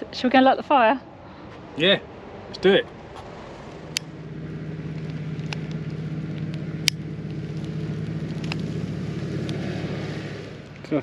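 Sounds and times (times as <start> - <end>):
engine running: 1.8 - 11.0
sharp clicks: 4.9 - 8.7.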